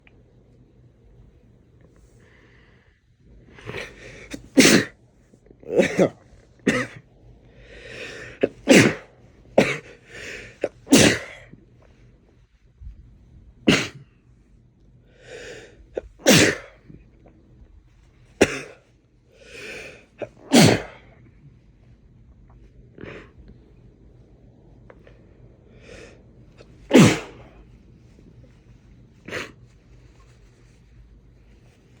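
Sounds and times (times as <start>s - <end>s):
man sneezing: 3.7s - 4.9s, 5.7s - 7.0s, 8.4s - 9.8s, 10.6s - 11.4s, 13.7s - 14.0s, 16.0s - 16.8s, 18.4s - 18.8s, 19.7s - 21.0s, 26.9s - 27.5s.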